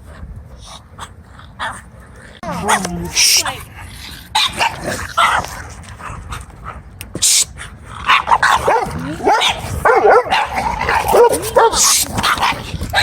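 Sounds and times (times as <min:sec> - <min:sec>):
dogs barking: 0:04.2 - 0:06.2, 0:08.0 - 0:13.0
dogs yelping and whining: 0:08.0 - 0:13.0.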